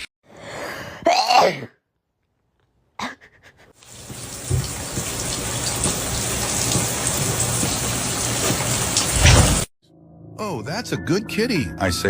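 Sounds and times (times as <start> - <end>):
falling water: 3.8 - 9.7.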